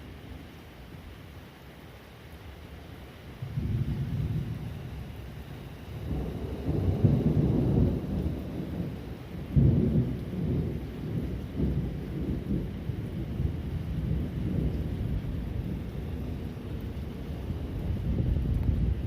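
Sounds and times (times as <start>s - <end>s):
thunder rumbling: 3.4s - 19.0s
thunder clap: 6.0s - 12.8s.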